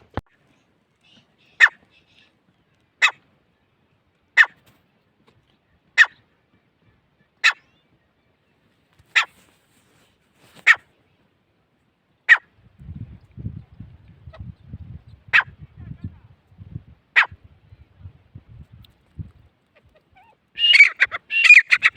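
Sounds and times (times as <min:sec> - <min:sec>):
francolin calling: 0:19.9 - 0:21.9.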